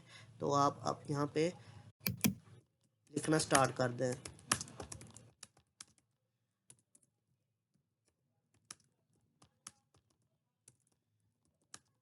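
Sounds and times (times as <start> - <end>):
keyboard keystrokes: 2.1 - 2.4.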